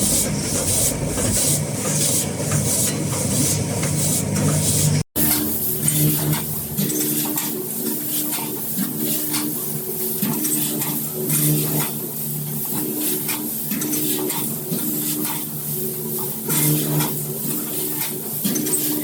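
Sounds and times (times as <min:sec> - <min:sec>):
packing machine motor hum: 0:00.0 - 0:07.1
machine clicks and clatter: 0:00.0 - 0:19.0.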